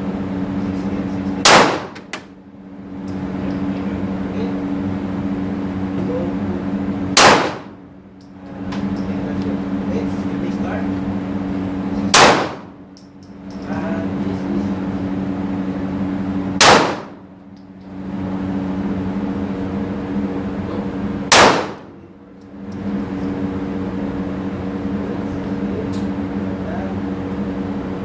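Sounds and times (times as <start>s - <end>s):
steady low hum: 0.0s - 28.0s
gunshots: 1.4s - 2.1s, 7.2s - 7.8s, 12.1s - 12.8s, 16.6s - 17.2s, 21.3s - 21.9s.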